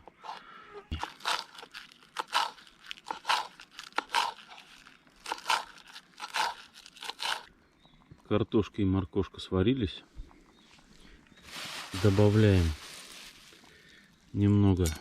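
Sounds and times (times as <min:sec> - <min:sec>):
knife cutting food on wood: 0:05.2 - 0:07.4.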